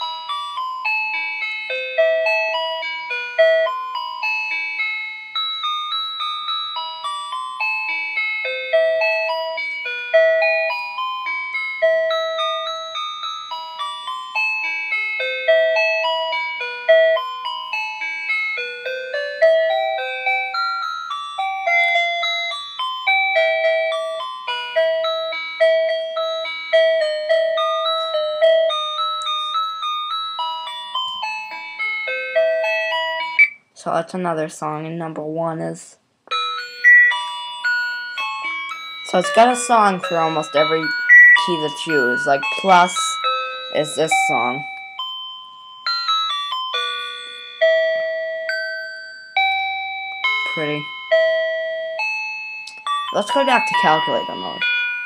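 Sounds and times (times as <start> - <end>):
electronic beeping melody: 33.2 - 33.6, 36.4 - 37.3, 38.4 - 43.2.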